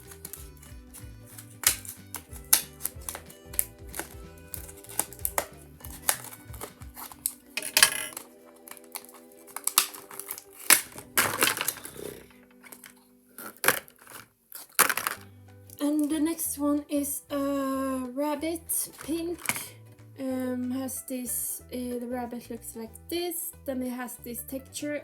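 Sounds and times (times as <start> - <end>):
music with repeating bass line: 0.0 - 7.4
plastic toy pieces clicking: 0.0 - 15.2, 18.9 - 19.7
packaging rustling: 0.0 - 15.3.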